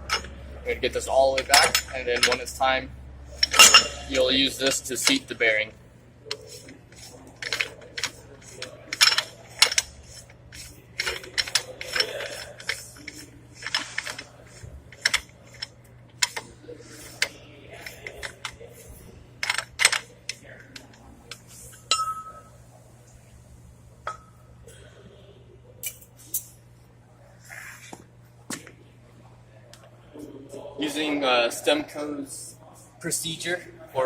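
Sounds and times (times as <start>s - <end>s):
steel parts clicking and clinking: 0.0s - 2.7s, 3.3s - 5.5s, 6.3s - 22.5s.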